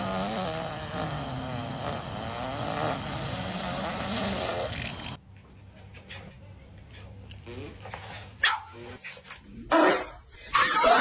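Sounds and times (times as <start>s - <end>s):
buzzing fart: 0.0s - 5.2s.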